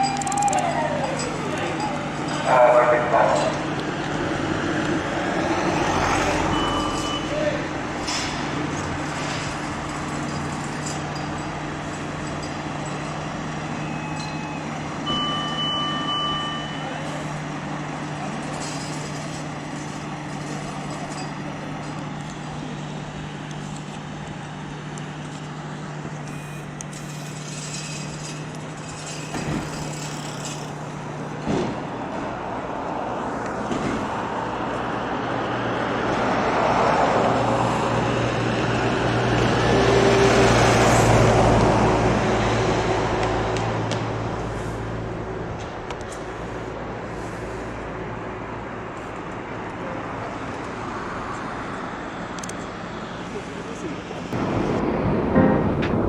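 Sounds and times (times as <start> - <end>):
vehicles idling low hum: 0.0 - 35.4
short electronic beep: 26.3 - 27.4.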